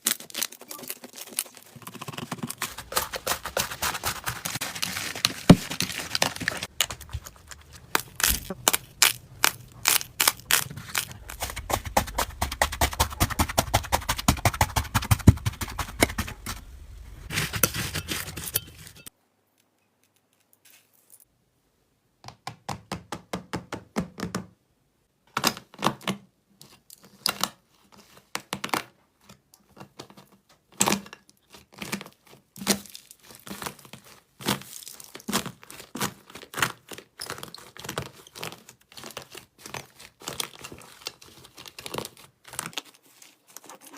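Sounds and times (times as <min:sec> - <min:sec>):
slime crackling and popping: 0:00.0 - 0:16.5.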